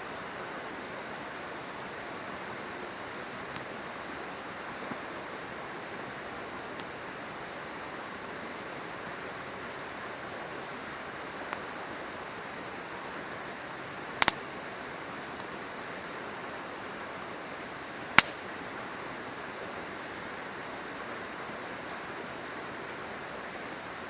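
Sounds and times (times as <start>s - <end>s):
river water rushing: 0.0s - 24.0s
campfire popping: 0.6s - 3.8s, 5.8s - 20.3s.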